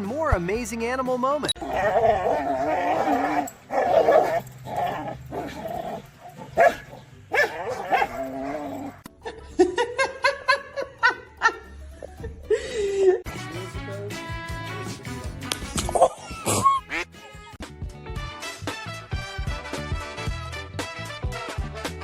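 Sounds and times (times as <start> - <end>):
background music: 0.0 - 22.0
dog barking: 3.8 - 4.4, 6.4 - 8.2.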